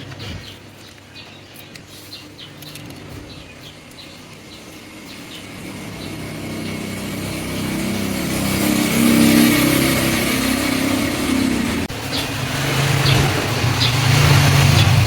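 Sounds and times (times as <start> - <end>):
motor humming and hissing: 1.8 - 15.0.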